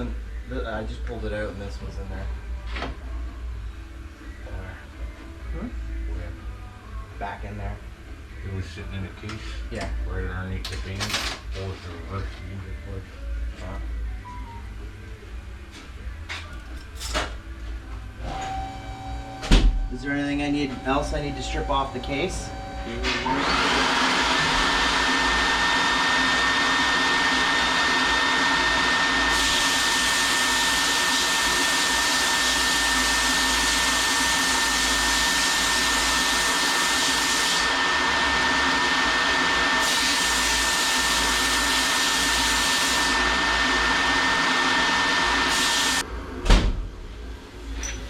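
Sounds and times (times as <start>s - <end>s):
thump: 46.4s - 46.9s.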